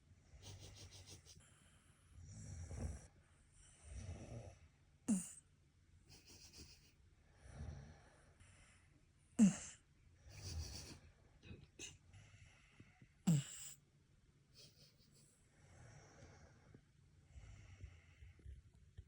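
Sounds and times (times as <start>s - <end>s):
dog snoring: 3.8s - 5.4s, 13.3s - 13.8s.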